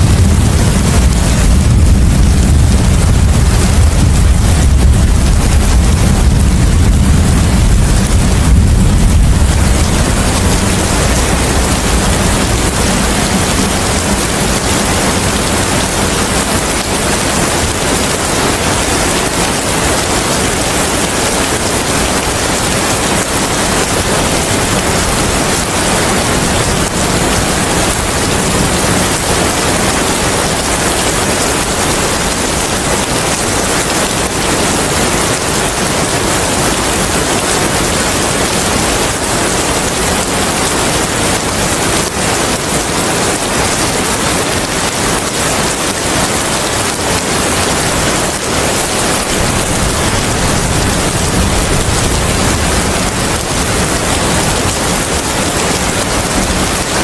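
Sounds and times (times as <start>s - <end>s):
low rumble: 0.0s - 16.8s
dense rain: 0.0s - 57.0s.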